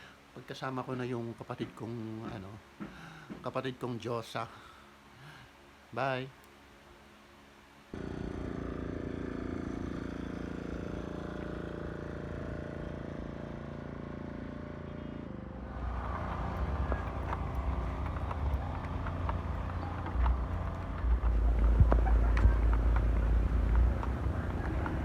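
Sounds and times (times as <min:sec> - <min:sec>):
vehicle engine and road noise: 0:07.9 - 0:25.0
rough low rumble: 0:14.8 - 0:25.0.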